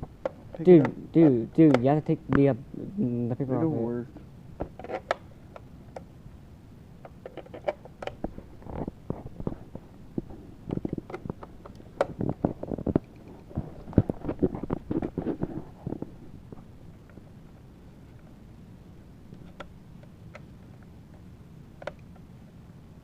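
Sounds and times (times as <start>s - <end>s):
rustling: 7.2s - 18.5s.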